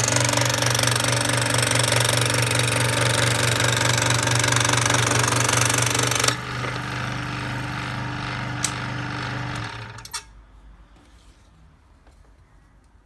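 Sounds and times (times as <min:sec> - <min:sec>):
electric power tool humming: 0:00.0 - 0:10.2.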